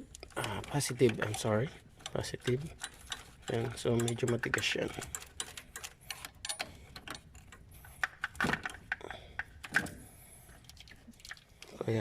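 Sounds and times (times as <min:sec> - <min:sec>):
metallic knocks: 0:01.0 - 0:05.8.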